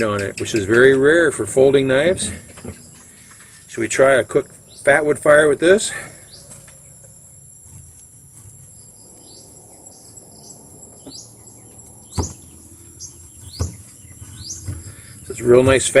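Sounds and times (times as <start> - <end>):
bird chirps: 0.0 - 1.0, 2.5 - 5.2, 5.9 - 16.0
insects droning: 0.0 - 16.0
sharp knocks: 12.1 - 12.6, 13.4 - 16.0.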